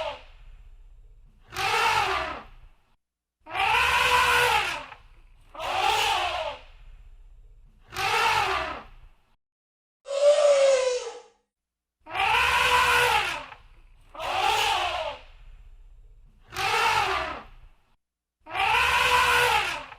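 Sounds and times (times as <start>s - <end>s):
elephant trumpeting: 3.6s - 4.9s, 12.2s - 13.5s, 18.5s - 19.9s.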